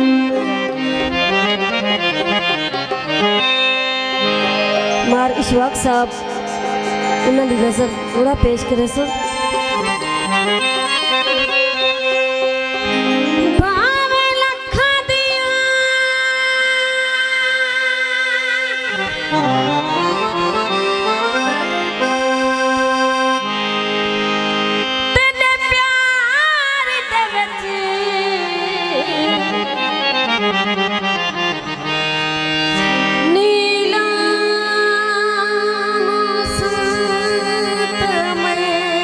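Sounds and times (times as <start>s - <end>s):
reedy wind instrument melody: 0.0s - 14.7s, 28.9s - 34.9s
low drone note: 3.0s - 14.1s.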